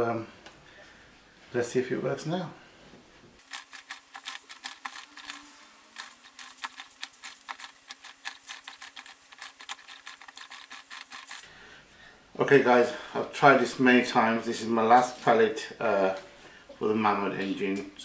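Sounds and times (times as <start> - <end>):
toy steam engine clicking and spitting: 3.4 - 11.5.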